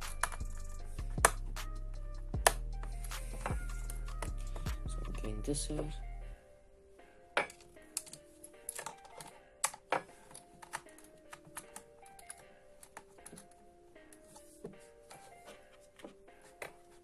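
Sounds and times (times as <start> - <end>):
quiet background music: 0.0 - 17.0
plastic parts clicking and tapping: 7.4 - 13.6.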